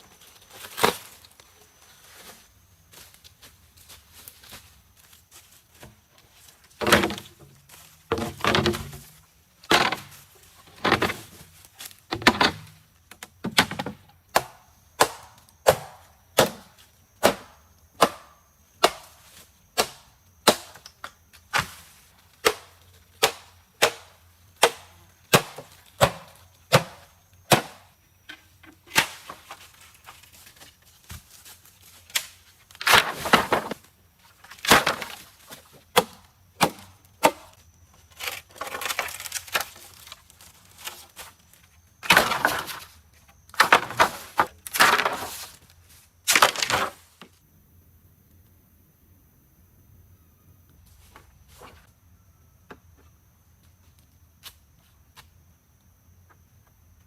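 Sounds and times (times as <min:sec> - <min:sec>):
axe striking wood: 0:14.3 - 0:19.1, 0:19.8 - 0:20.8, 0:22.4 - 0:27.8
wood splitting: 0:32.1 - 0:33.8, 0:34.5 - 0:37.5, 0:42.0 - 0:42.9, 0:43.5 - 0:45.6, 0:46.3 - 0:47.0.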